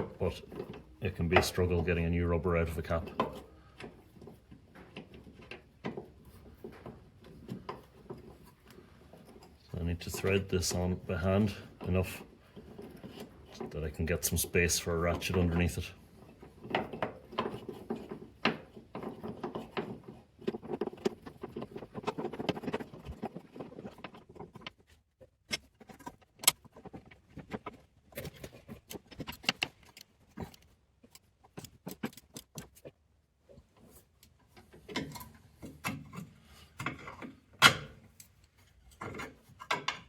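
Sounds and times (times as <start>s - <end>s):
metal rubbing and rattling: 0.0s - 40.0s.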